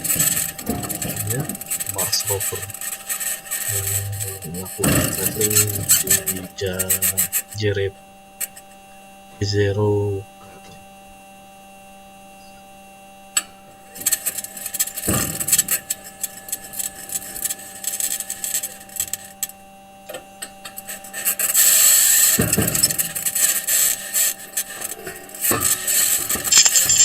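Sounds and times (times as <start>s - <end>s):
clicks and squeaks: 0.0s - 7.6s, 14.0s - 19.5s, 20.6s - 27.0s
metal wheels crunching over rock: 0.0s - 7.6s, 13.9s - 19.5s, 20.8s - 27.0s
steady electrical hum: 0.0s - 27.0s.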